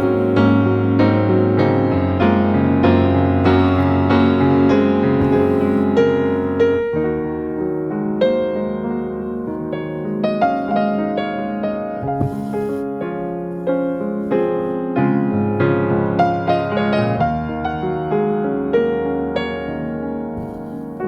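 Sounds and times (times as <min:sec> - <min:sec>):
soft piano music: 0:00.0 - 0:21.0.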